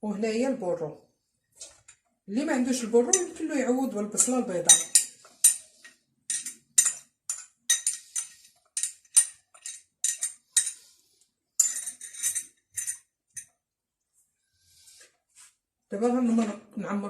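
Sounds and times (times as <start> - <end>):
metal utensil clinking on pot: 3.1 - 5.7, 6.3 - 10.8, 11.6 - 13.5.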